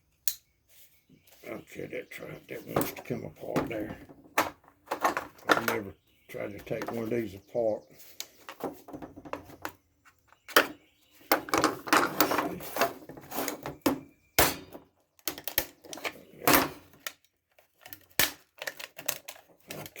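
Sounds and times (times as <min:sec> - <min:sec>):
plastic shell rattling: 0:02.7 - 0:05.9, 0:10.4 - 0:13.9, 0:15.2 - 0:20.0
plastic snapping: 0:14.4 - 0:20.0.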